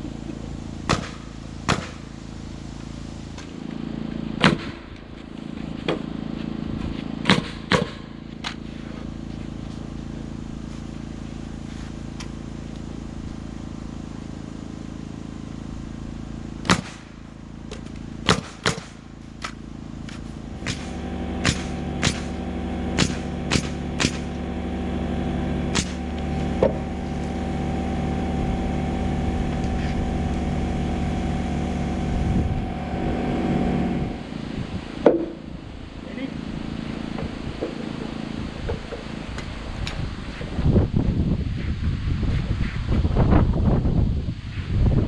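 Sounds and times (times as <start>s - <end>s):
motor hum: 0.0s - 45.0s
nail gun shots: 0.8s - 2.1s, 4.4s - 4.8s, 7.2s - 8.2s, 16.6s - 17.1s, 18.2s - 19.6s, 20.6s - 22.4s, 23.0s - 24.4s, 25.7s - 26.1s.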